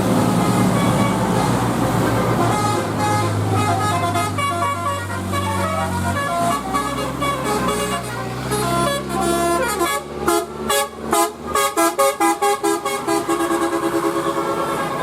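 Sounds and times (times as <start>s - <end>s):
low bus engine hum: 0.0s - 15.0s
bus air horns playing a tune: 0.3s - 15.0s.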